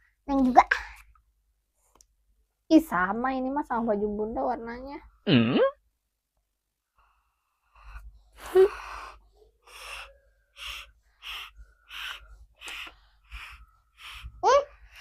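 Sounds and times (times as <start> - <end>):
hissy puffs of breath: 7.4 - 15.0.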